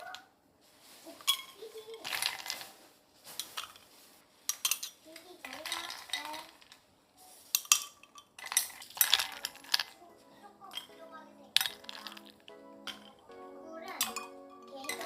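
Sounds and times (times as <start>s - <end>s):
spoons clinking against bowls: 4.5s - 6.7s, 7.5s - 10.0s, 10.7s - 13.3s, 13.9s - 15.0s.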